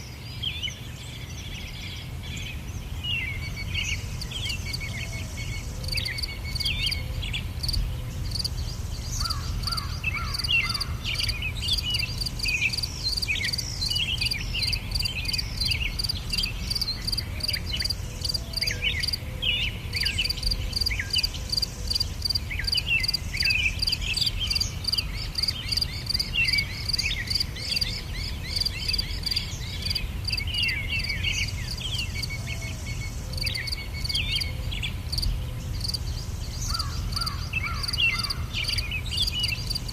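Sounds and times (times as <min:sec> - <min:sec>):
birds chirping: 0:00.0 - 0:39.9
insect trilling: 0:05.8 - 0:07.0, 0:07.6 - 0:19.2.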